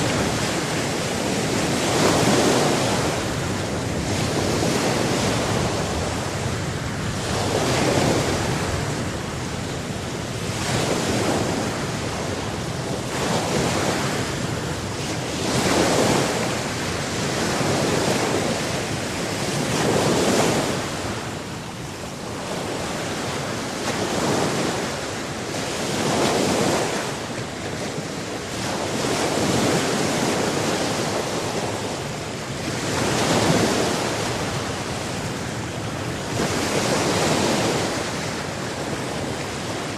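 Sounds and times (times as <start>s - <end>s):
ocean waves breaking on shore: 0.0s - 39.9s
wind: 0.0s - 39.9s.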